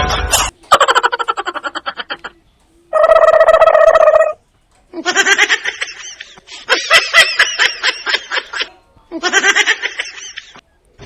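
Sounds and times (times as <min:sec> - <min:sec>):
stuttering high-pitched cackle: 0:00.4 - 0:02.3, 0:03.0 - 0:04.4.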